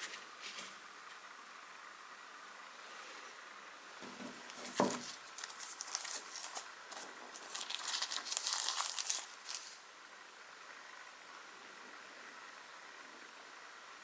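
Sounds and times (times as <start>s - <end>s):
plastic wrap crinkling: 4.2s - 9.9s.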